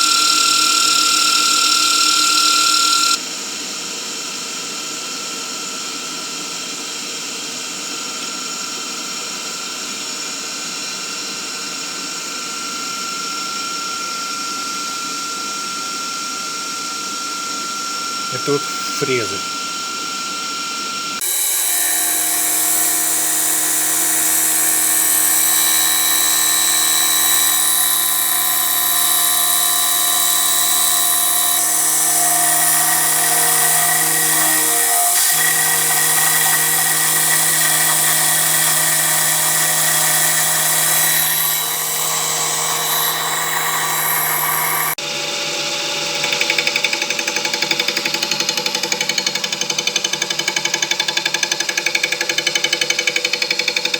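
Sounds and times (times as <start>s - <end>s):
milling machine spindle whine: 0.0s - 3.2s, 21.2s - 45.0s.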